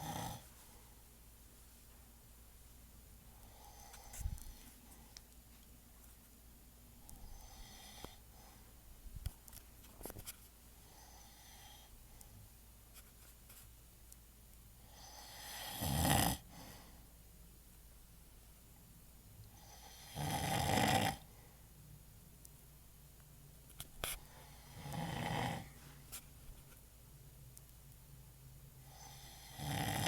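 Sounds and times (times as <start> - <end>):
man snoring loudly: 0.0 - 0.4, 15.0 - 16.5, 19.7 - 21.2, 24.7 - 25.7, 29.0 - 30.0.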